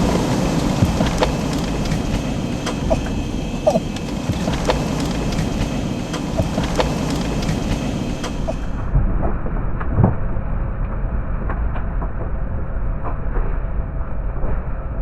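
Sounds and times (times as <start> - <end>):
sharp knocks and rattles: 0.0 - 8.8
strong wind: 0.0 - 15.0
vehicle low rumble: 0.0 - 15.0.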